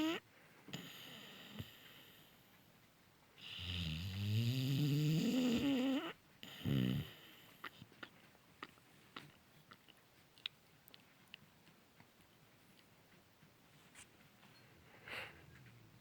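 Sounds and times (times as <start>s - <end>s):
puppy snoring: 0.0s - 2.6s, 3.4s - 9.3s.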